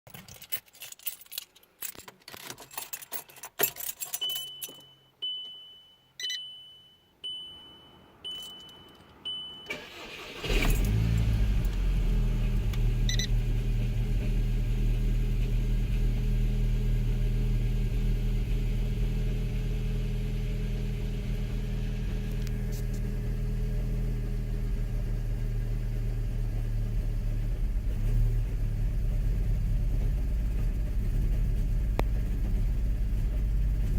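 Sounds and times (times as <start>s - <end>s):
keys jangling: 0.1s - 4.9s
warning chime beeping: 4.2s - 10.1s
car engine cranking: 9.6s - 14.6s
car engine rough idle: 9.9s - 33.9s.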